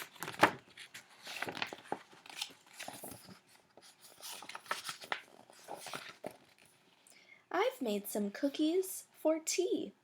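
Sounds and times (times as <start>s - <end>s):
rustling handling noise: 0.0s - 7.0s.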